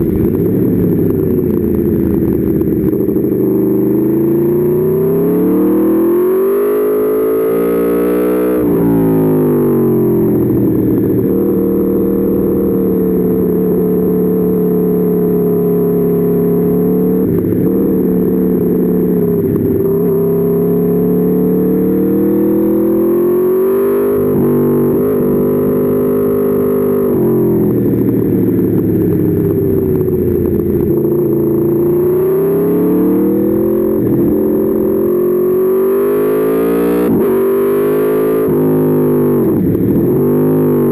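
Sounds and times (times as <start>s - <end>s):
motorcycle engine at speed: 0.0s - 40.9s.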